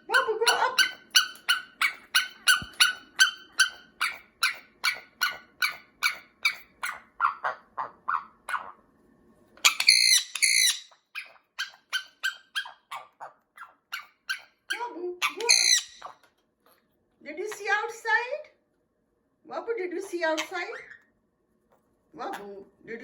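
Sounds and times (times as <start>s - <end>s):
parrot squawk: 0.0s - 8.8s, 9.6s - 16.3s.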